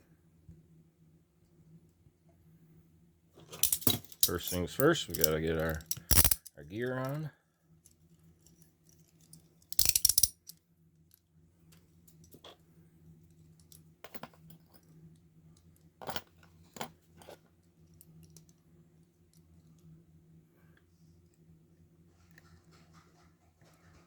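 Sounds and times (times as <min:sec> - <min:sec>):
handcuff ratchet clicks: 0:03.6 - 0:06.5, 0:09.7 - 0:10.6
metallic clicks and knocks: 0:03.6 - 0:06.5, 0:09.8 - 0:10.4.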